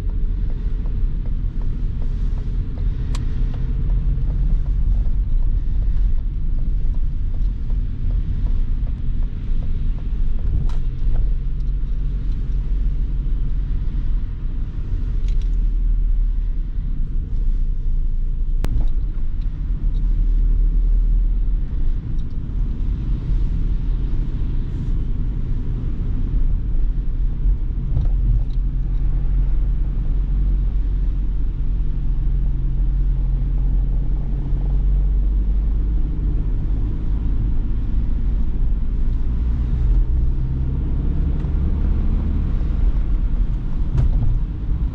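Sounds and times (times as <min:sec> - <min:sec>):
van engine and road rumble: 0:00.0 - 0:44.9.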